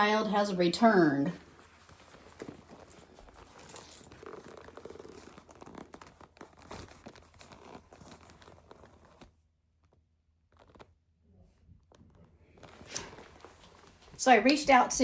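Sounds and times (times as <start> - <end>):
handbag rustling and crinkling: 1.4 - 9.4, 10.5 - 10.9, 12.6 - 14.2.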